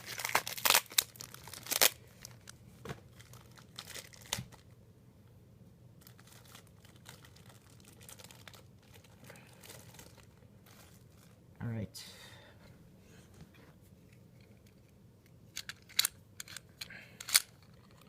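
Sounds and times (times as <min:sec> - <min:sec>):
plastic packaging crinkling and tearing: 0:00.0 - 0:02.5, 0:03.1 - 0:04.8, 0:06.0 - 0:11.4
sharp plastic crackles: 0:00.0 - 0:04.7, 0:06.0 - 0:11.4.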